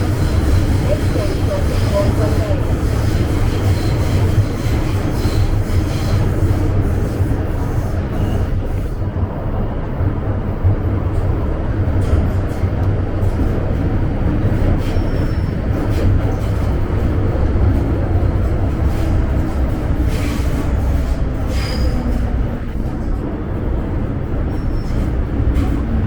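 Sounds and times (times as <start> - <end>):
train wheels rumbling: 0.0 - 26.0
high wheel squeals: 14.8 - 15.9, 21.4 - 22.4.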